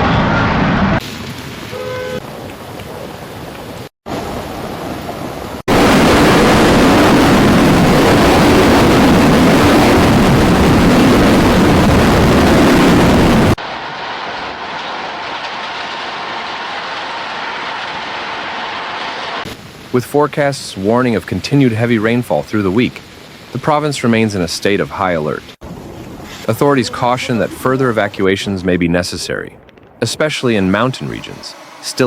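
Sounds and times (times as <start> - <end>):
rushing noise: 0.0 - 2.4, 5.6 - 20.0, 25.6 - 32.0.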